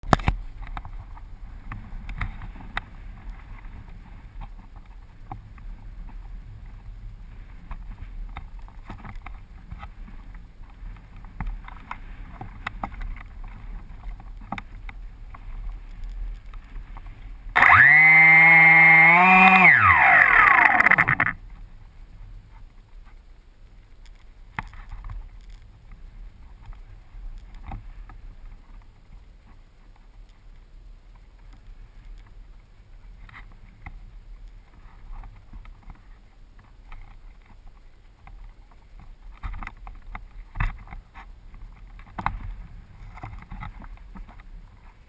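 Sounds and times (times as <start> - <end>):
quiet rustle: 0.0 - 45.0
electric model plane motor whine: 17.6 - 21.4
faint clicks: 22.5 - 32.4.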